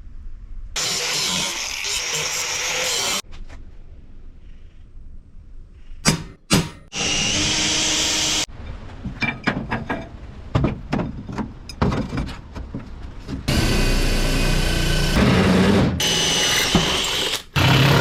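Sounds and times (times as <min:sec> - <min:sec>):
power tool running: 0:06.9 - 0:08.5, 0:13.5 - 0:18.0.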